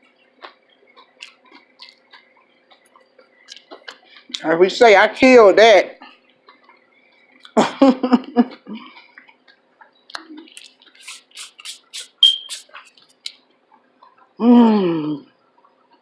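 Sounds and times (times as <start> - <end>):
wet mouth clicks: 0.4 - 4.4, 9.1 - 13.4.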